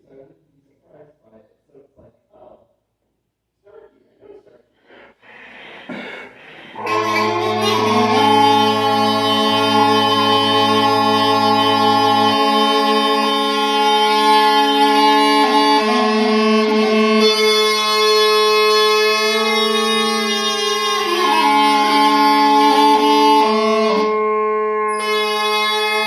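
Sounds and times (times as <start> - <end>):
smallpipes playing a tune: 6.7 - 26.0.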